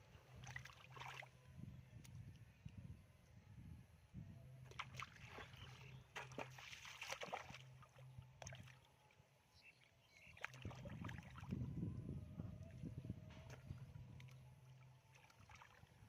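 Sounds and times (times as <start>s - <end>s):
low steady hum: 0.0s - 16.0s
splashing in shallow water: 0.2s - 1.4s, 4.7s - 8.9s, 10.2s - 11.7s, 13.4s - 16.0s.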